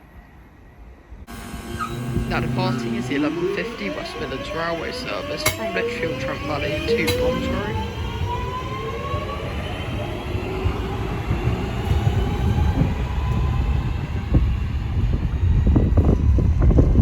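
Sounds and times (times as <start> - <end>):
rumble of wheels on track: 0.4 - 17.0
train traction motor whine: 1.3 - 17.0.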